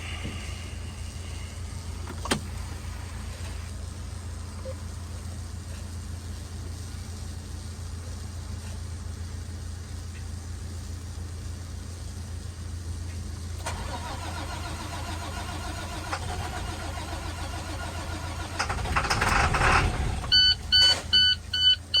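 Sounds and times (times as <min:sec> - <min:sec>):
diesel truck engine rumbling: 0:00.0 - 0:09.7, 0:13.5 - 0:22.0
rapid electronic alarm beeps: 0:20.3 - 0:22.0.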